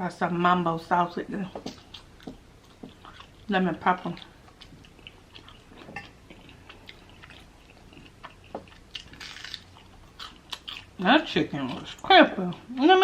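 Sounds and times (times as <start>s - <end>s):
person chewing crispy food: 1.7s - 11.0s.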